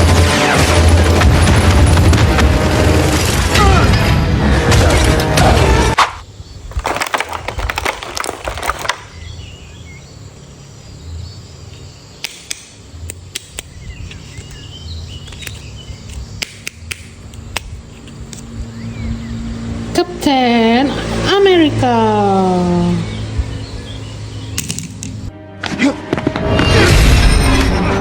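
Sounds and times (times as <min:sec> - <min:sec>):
plastic packaging clicking and crackling: 0:06.8 - 0:09.1.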